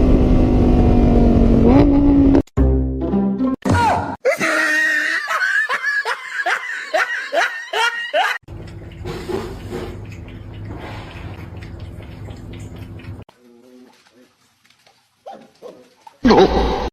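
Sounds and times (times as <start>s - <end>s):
person laughing hard: 4.2s - 8.4s, 16.2s - 16.9s.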